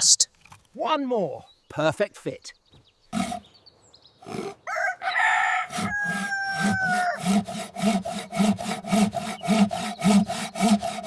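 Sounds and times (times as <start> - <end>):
held crowing call: 4.2 - 10.9
rhythmic scraping strokes: 5.7 - 11.0.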